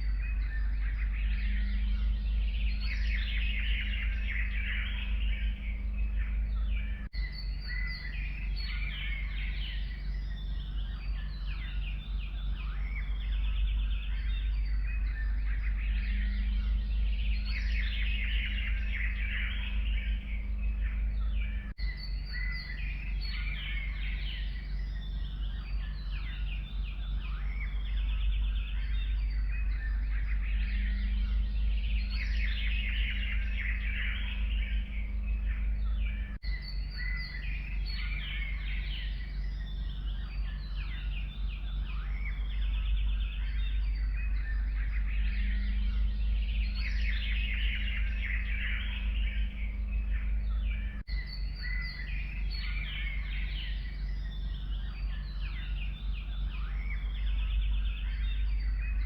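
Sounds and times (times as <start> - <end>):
low rumble: 0.0 - 59.0
songbirds chirping and singing: 0.0 - 59.0.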